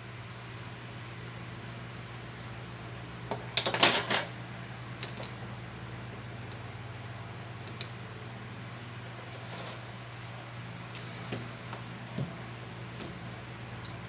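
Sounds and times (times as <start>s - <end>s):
steady low hum: 0.0s - 14.0s
metal tools clicking and clattering: 3.6s - 4.3s.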